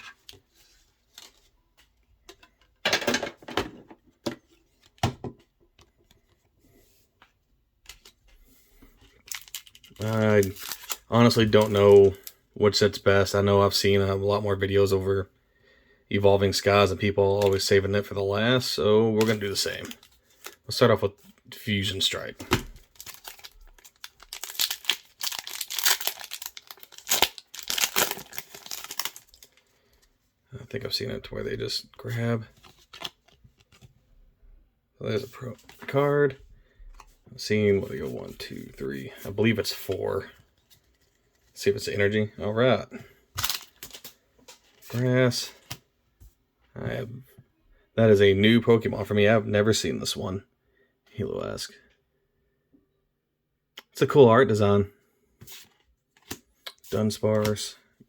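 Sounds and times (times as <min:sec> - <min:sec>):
foil wrapper crinkling and tearing: 0:09.2 - 0:12.4, 0:22.0 - 0:30.0, 0:43.4 - 0:44.2.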